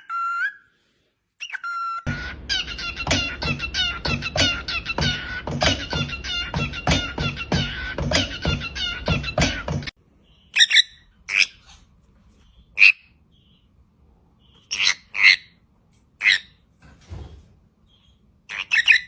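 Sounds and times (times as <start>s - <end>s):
parrot calling loudly: 1.4s - 9.9s, 10.5s - 11.8s, 14.7s - 15.6s, 16.2s - 16.6s, 18.5s - 19.0s.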